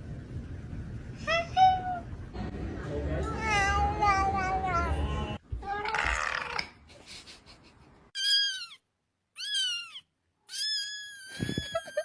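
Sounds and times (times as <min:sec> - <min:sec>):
cat meowing: 0:09.4 - 0:11.9.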